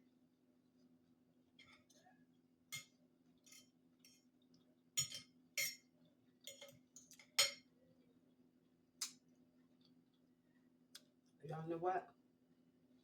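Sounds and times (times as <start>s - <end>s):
utensil clinking against plate: 5.0s - 7.7s.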